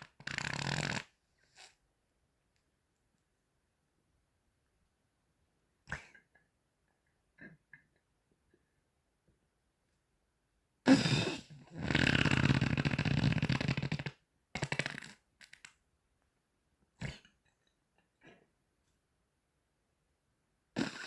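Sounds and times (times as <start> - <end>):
farting: 0.0 - 1.8, 10.9 - 15.8, 20.8 - 21.0.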